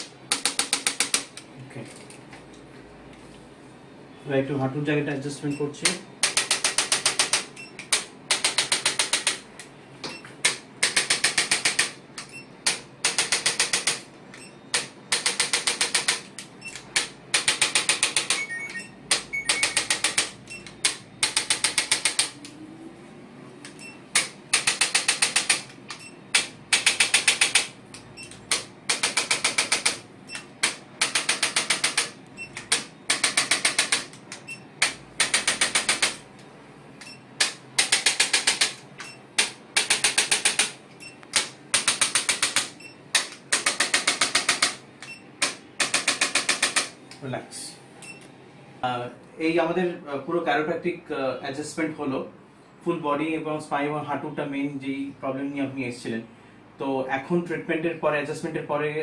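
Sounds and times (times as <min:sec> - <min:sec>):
rapid clicking impulses: 0:00.0 - 0:01.5, 0:05.8 - 0:18.4, 0:19.1 - 0:22.6, 0:23.6 - 0:36.4, 0:37.0 - 0:47.0.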